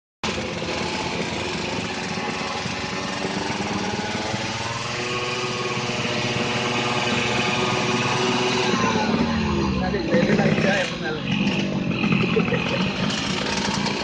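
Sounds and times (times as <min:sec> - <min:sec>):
motorcycle engine revving: 0:00.2 - 0:14.0.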